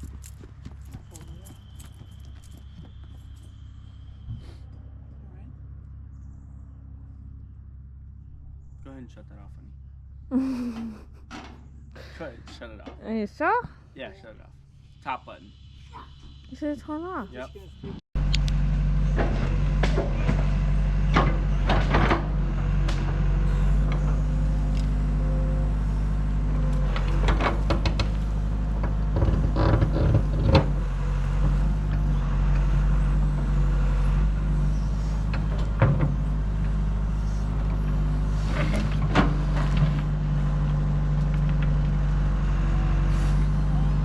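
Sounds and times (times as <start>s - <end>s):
heavy machine engine running: 17.8s - 44.0s
clanks and knocks: 27.0s - 28.2s.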